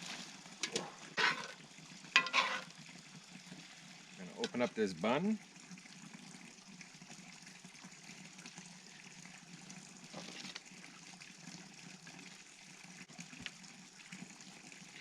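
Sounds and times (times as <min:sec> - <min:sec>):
food bubbling in a pot: 0:00.0 - 0:15.0.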